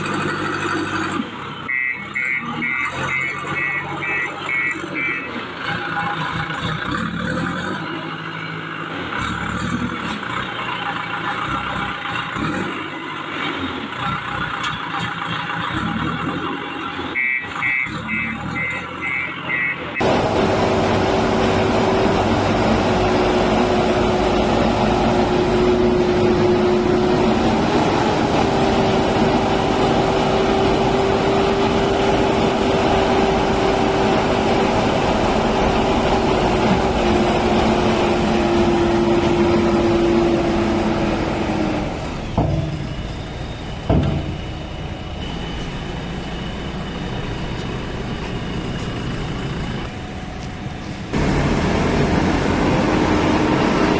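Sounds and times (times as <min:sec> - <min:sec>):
heavy machine engine with whine: 0:00.0 - 0:53.9
sharp knocks: 0:43.8 - 0:44.6.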